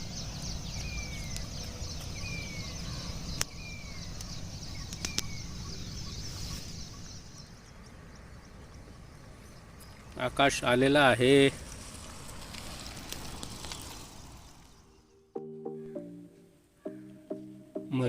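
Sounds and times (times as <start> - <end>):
birds chattering: 0.0 - 10.9.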